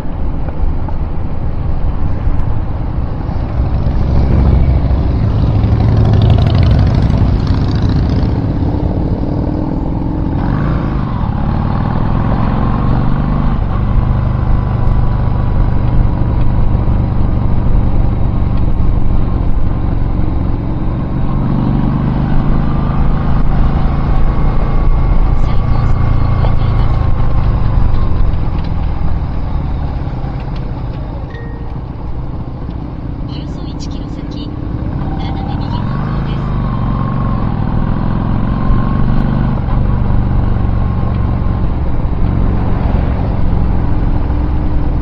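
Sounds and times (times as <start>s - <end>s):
road noise: 0.0s - 45.0s
vehicle engine: 0.0s - 45.0s.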